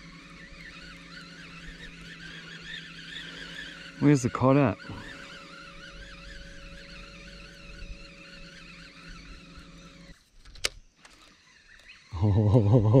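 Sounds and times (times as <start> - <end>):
small electric motor humming: 0.0 - 13.0
sharp click: 10.4 - 11.9.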